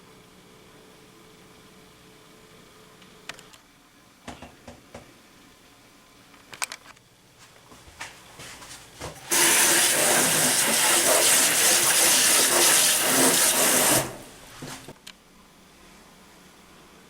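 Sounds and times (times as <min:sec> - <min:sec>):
water rushing from shower-head: 0:09.3 - 0:14.4.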